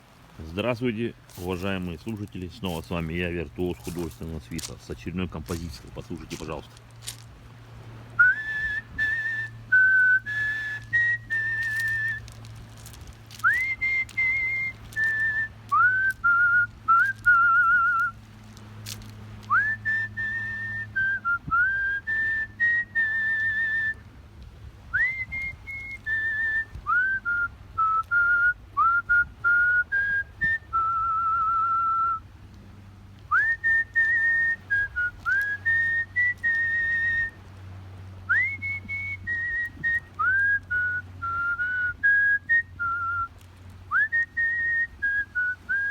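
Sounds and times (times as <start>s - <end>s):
person whistling a melody: 8.2s - 12.3s, 13.4s - 18.1s, 19.5s - 24.0s, 25.0s - 32.2s, 33.3s - 37.4s, 38.3s - 43.3s, 43.9s - 45.9s.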